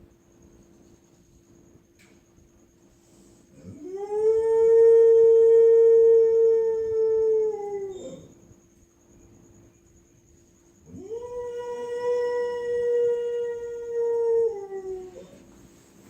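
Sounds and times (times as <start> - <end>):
dog howling: 3.6 - 8.3, 10.8 - 15.4.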